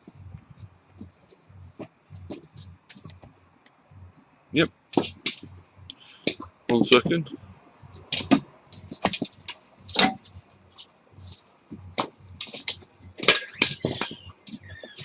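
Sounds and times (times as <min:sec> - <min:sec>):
small hard objects clicking and rattling: 0:08.1 - 0:15.0.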